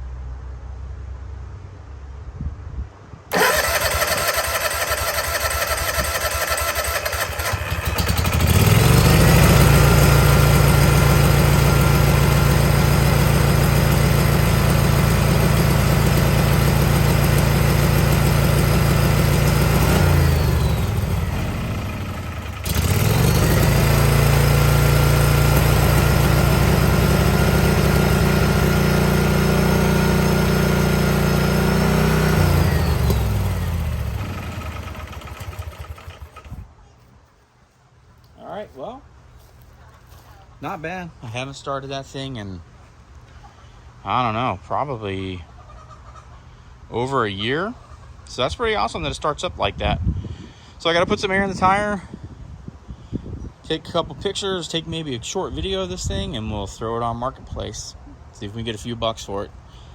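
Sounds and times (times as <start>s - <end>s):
electric starter cranking: 3.3s - 36.6s
small gasoline engine running: 3.3s - 36.6s.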